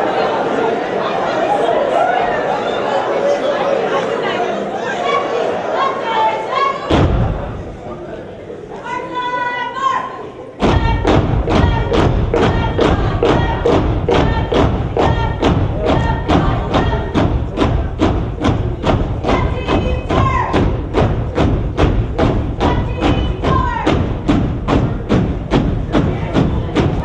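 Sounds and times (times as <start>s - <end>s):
rhythmic stomps and claps: 10.6s - 27.0s.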